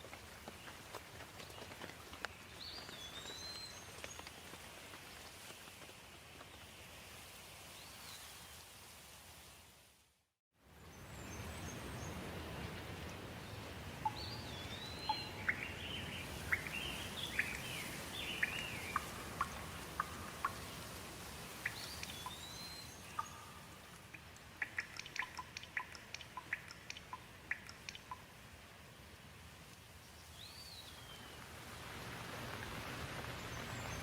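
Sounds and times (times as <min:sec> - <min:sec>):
steady rain: 0:00.0 - 0:10.2, 0:10.8 - 0:34.0
water dripping: 0:12.8 - 0:28.5
birds singing: 0:13.4 - 0:20.9, 0:21.5 - 0:28.2.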